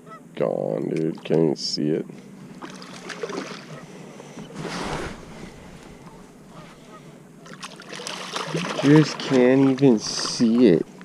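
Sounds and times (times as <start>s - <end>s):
boat low hum: 0.0s - 11.0s
wind: 0.0s - 11.0s
water: 0.6s - 11.0s.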